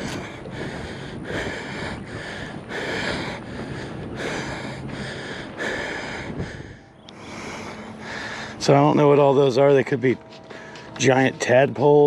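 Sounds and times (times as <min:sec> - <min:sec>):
person breathing heavily: 0:00.0 - 0:08.8, 0:10.3 - 0:11.0.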